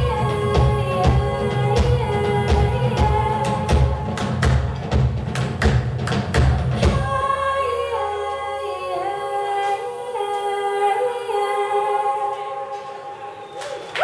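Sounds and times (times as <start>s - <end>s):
drum hits: 0.6s - 7.1s.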